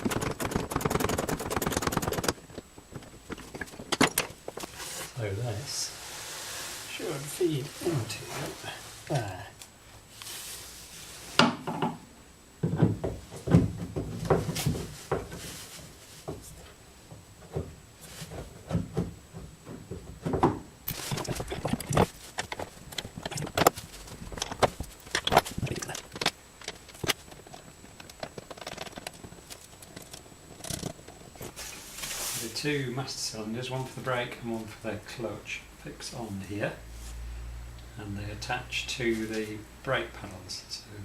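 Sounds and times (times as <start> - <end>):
metal parts knocking and scraping: 0.0 - 4.7, 20.9 - 31.2.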